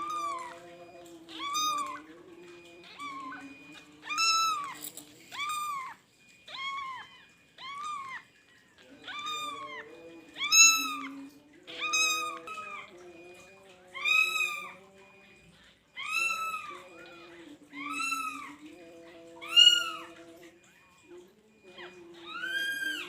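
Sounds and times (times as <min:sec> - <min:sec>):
kitten meowing: 0:01.3 - 0:02.0, 0:02.9 - 0:08.3, 0:09.0 - 0:09.8.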